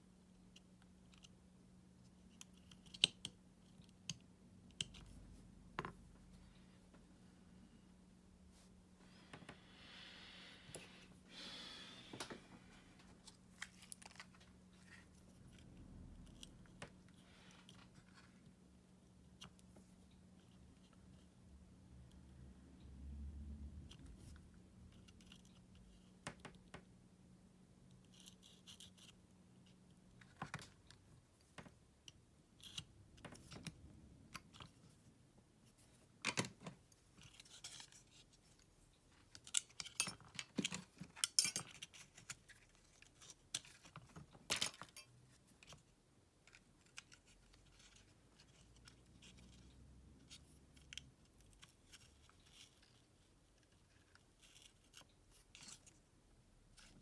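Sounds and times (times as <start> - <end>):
small clicks taps and scrapes: 2.0 - 5.2, 23.9 - 26.9, 27.9 - 35.0, 35.7 - 56.0.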